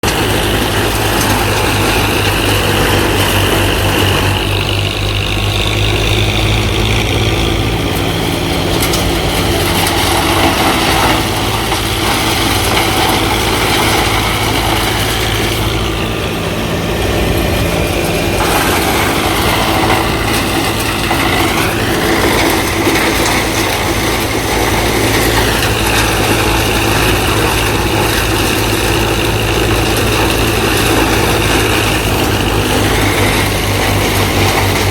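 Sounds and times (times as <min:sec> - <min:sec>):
high whine: 0:00.0 - 0:34.8
diesel engine running: 0:00.0 - 0:34.9.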